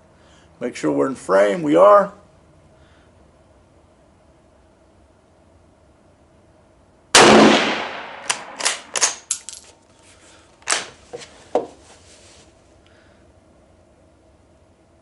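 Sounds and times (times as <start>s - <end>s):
rifle shot: 7.2s - 9.3s
rifle bolt metallic clicks: 8.2s - 9.7s.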